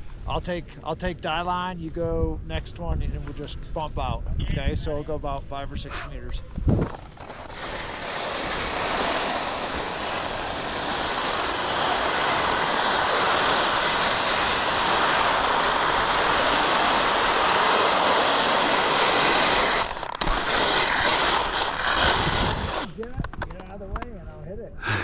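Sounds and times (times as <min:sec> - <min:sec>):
skis scraping hard snow: 0:06.6 - 0:23.0.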